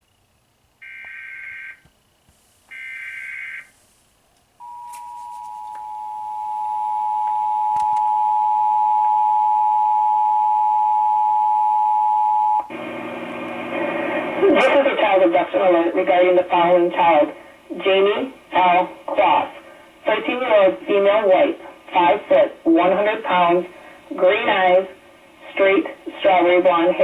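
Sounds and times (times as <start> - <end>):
two-tone alarm signal: 0.8 - 1.8, 2.7 - 3.7, 4.6 - 12.7
broadcast audio: 12.5 - 27.0.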